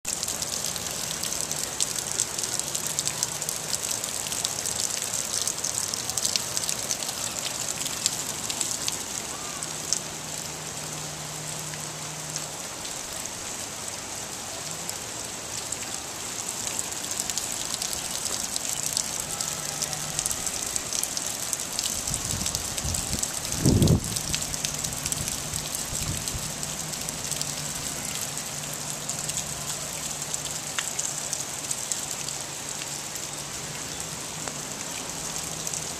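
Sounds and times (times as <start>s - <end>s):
heavy rain falling: 0.1s - 35.9s.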